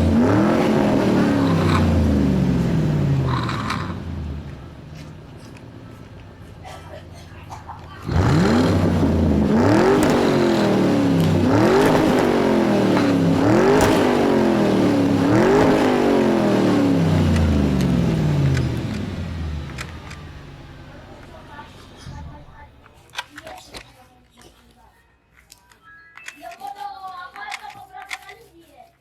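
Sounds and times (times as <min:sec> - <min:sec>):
toy race car engine revving: 0:00.0 - 0:06.3, 0:07.9 - 0:20.3.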